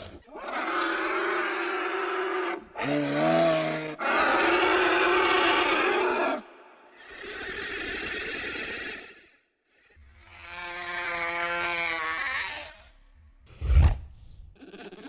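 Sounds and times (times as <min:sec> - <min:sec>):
creature call: 0:00.0 - 0:09.0, 0:10.2 - 0:13.0, 0:14.6 - 0:15.0
rasping creature growl: 0:02.5 - 0:06.4
breathy creature hiss: 0:05.5 - 0:10.4.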